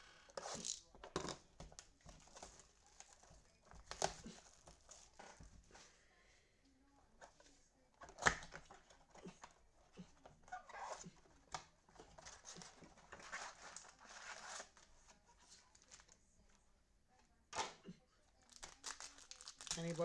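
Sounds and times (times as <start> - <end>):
card packaging crinkling and tearing: 12.2 - 14.9, 18.4 - 20.0.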